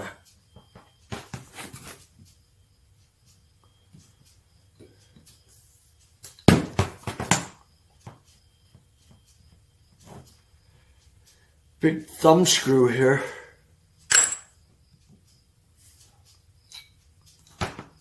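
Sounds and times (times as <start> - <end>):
metal parts knocking and clattering: 14.1 - 14.6.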